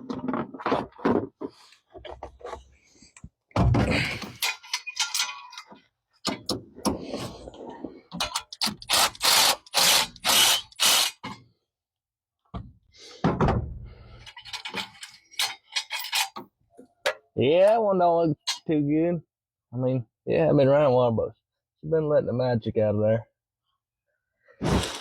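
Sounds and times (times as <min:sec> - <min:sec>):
ratchet strokes rasping: 0:08.5 - 0:11.2.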